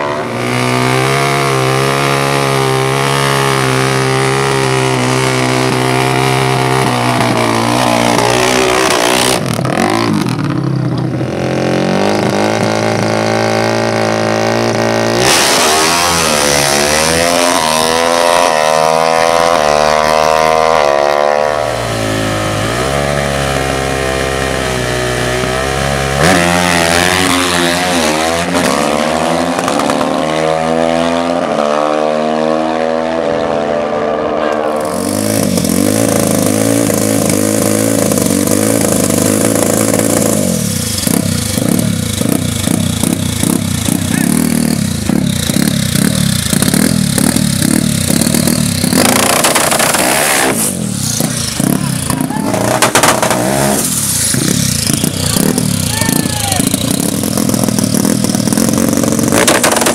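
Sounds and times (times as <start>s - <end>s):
atv engines revving: 0.0s - 59.9s
engines idling: 34.7s - 50.0s, 50.8s - 59.9s.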